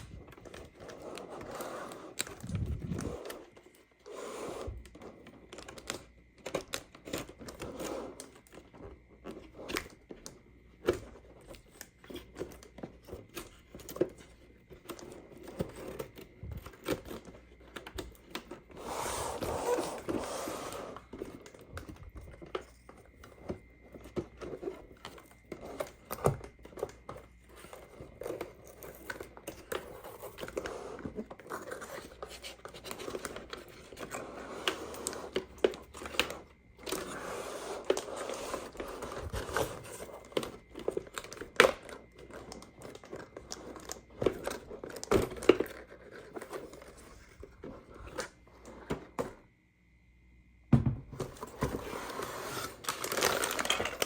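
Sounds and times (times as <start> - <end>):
packaging crinkling and tearing: 52.0 - 54.0.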